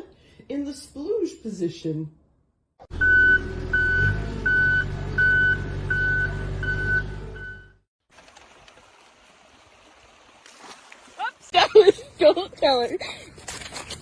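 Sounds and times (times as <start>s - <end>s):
engine rumbling: 2.8s - 8.6s
reversing alarm beeping: 3.0s - 7.8s.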